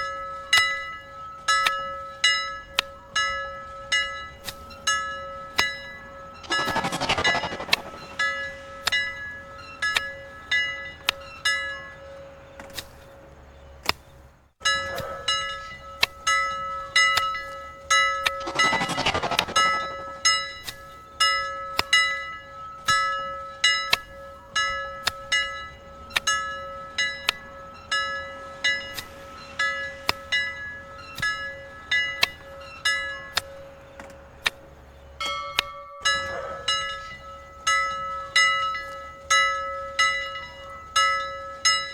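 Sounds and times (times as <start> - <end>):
railroad crossing bell ringing: 0.0 - 12.6, 14.6 - 33.8, 35.2 - 41.9
rushing sound: 6.4 - 8.5, 18.4 - 20.4
steady tone: 6.4 - 8.6, 18.3 - 20.6.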